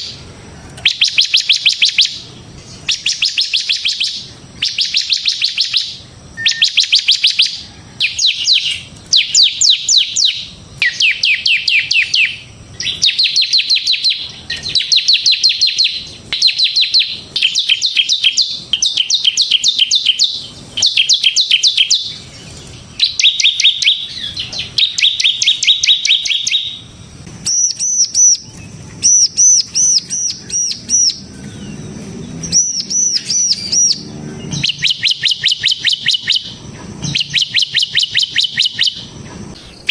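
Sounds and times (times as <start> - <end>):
bird singing rapid trills: 0.0 - 39.9.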